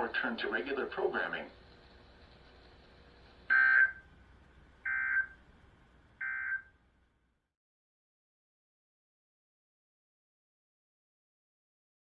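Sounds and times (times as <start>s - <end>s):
short buzzing data bursts: 3.5s - 4.0s, 4.8s - 5.4s, 6.2s - 6.7s.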